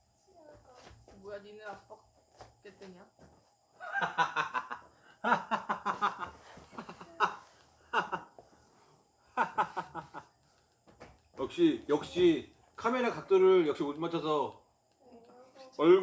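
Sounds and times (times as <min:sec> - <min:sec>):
people laughing: 0:03.8 - 0:08.4, 0:09.3 - 0:10.3.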